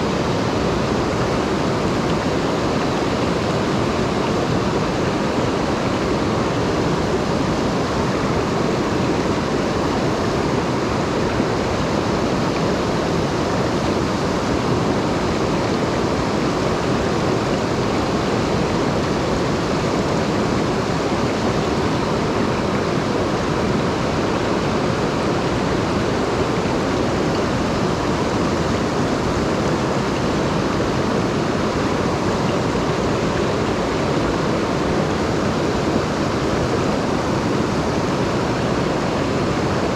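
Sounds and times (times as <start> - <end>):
mountain stream rushing: 0.0 - 39.9.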